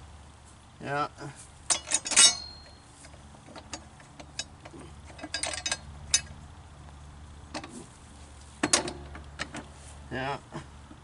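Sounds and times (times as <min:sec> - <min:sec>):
hand tools clicking and clanking: 0:01.7 - 0:06.4, 0:07.5 - 0:07.9, 0:08.6 - 0:09.8.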